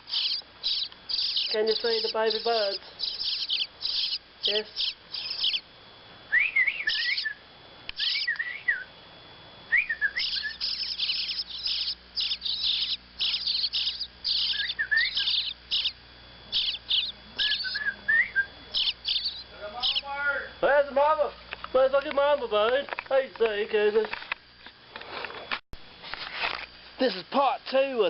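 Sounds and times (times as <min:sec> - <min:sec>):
baby birds chirping: 0:00.0 - 0:05.7, 0:06.4 - 0:08.7, 0:09.8 - 0:20.2.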